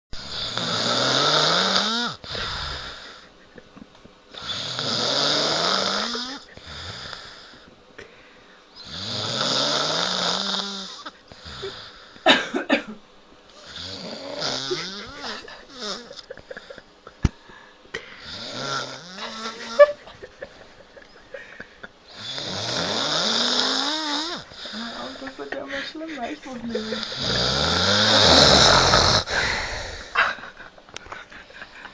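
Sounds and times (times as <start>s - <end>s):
man snoring loudly: 0.2s - 3.3s, 4.3s - 7.7s, 8.8s - 12.2s, 13.6s - 16.3s, 18.2s - 20.0s, 22.1s - 25.5s, 26.7s - 30.2s.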